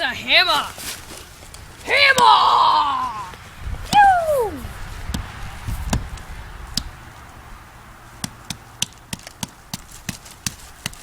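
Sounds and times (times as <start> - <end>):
hammer striking tree trunk: 5.1 - 7.0, 8.2 - 11.0.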